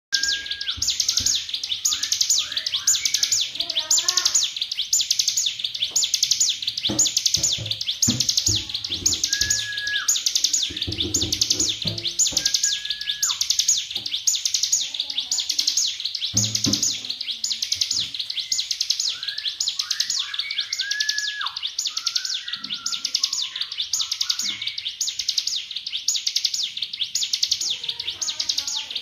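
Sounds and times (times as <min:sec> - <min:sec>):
low held bird whistles: 0:00.1 - 0:03.5, 0:09.2 - 0:10.6, 0:12.0 - 0:13.5, 0:18.4 - 0:24.8
songbird buzzy trilling: 0:00.1 - 0:29.0
soft knocks: 0:06.9 - 0:09.7, 0:10.6 - 0:12.8.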